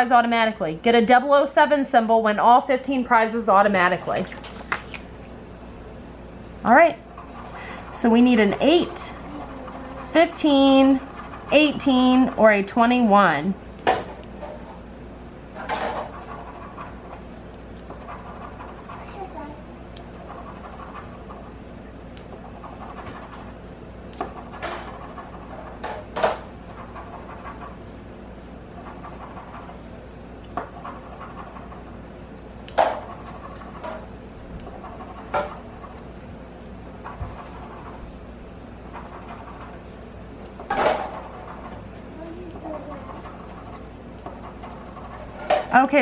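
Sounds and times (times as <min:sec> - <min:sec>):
scratching lottery ticket: 0:07.0 - 0:12.6, 0:16.0 - 0:19.1, 0:20.2 - 0:21.6, 0:22.4 - 0:23.6, 0:24.3 - 0:25.8, 0:26.7 - 0:27.8, 0:28.8 - 0:29.8, 0:30.7 - 0:32.0, 0:33.0 - 0:33.9, 0:34.7 - 0:36.1, 0:37.1 - 0:38.2, 0:38.9 - 0:40.0, 0:42.7 - 0:45.4.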